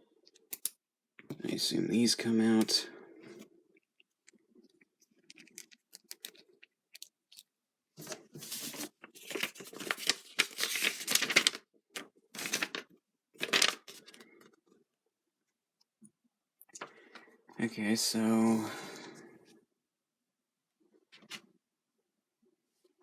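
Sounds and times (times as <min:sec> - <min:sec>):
small plastic clicks: 0:00.3 - 0:01.3
plastic packaging crinkling: 0:08.0 - 0:11.6, 0:12.4 - 0:14.3.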